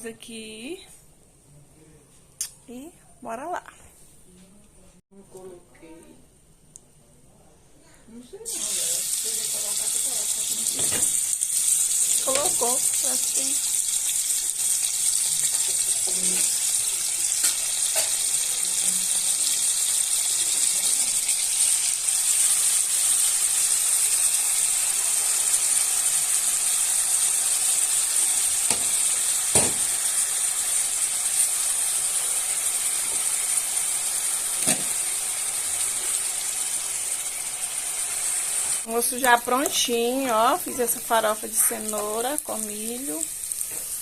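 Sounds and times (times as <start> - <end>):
steaks sizzling in a pan: 8.5 - 44.0.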